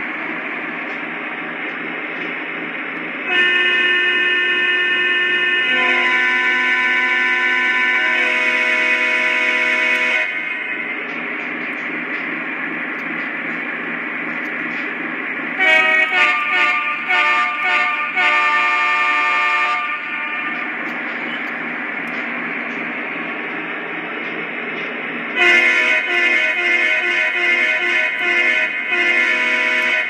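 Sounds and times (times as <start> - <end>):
train horn blasts: 3.3 - 10.8, 15.6 - 20.6, 25.4 - 30.0.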